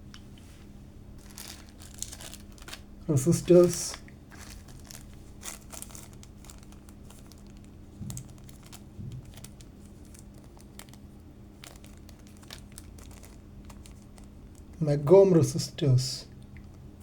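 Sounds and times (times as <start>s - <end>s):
steady low hum: 0.0s - 17.0s
plastic bags crinkling: 1.2s - 14.8s.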